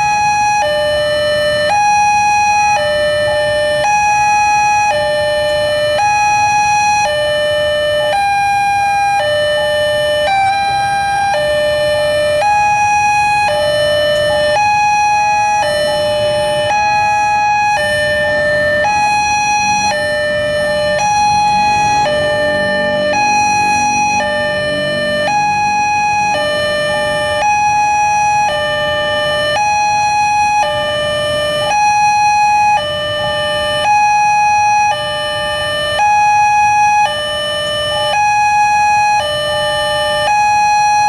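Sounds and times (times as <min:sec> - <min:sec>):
two-tone crossing alarm chime: 0:10.3 - 0:30.8
low rumble: 0:20.4 - 0:27.2.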